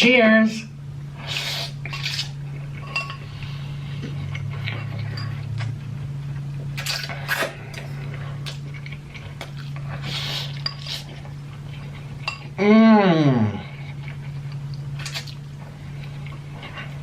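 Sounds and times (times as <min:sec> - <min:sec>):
steady hum: 0:00.0 - 0:17.0
cutlery clinking against dishes: 0:02.8 - 0:03.2.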